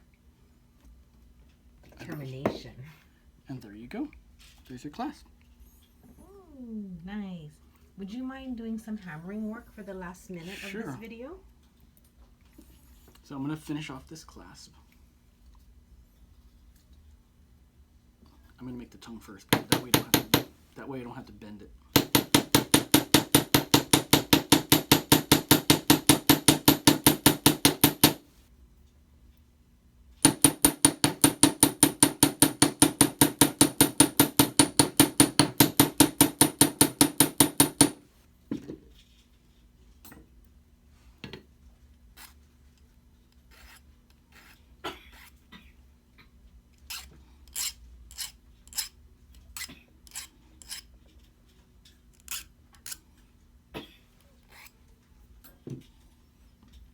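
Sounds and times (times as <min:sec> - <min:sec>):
hammer tapping metal wire: 0:19.6 - 0:20.6, 0:22.0 - 0:28.2, 0:30.2 - 0:38.0.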